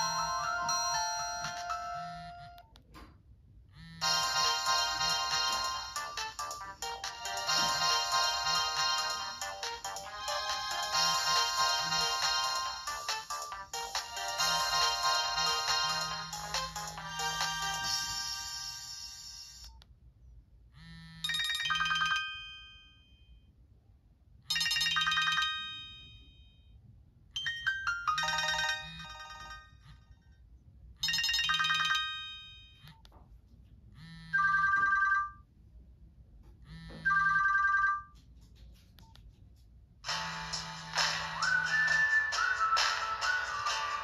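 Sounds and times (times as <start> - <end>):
busy ringtone melody: 0.0 - 2.6, 3.8 - 19.7, 20.8 - 23.3, 24.5 - 26.6, 27.4 - 30.3, 31.0 - 32.9, 34.1 - 35.5, 36.9 - 38.2, 40.0 - 44.0
electronic chime ringtone: 0.0 - 2.6, 4.0 - 19.7, 21.2 - 23.4, 24.5 - 26.7, 27.4 - 30.3, 31.0 - 32.9.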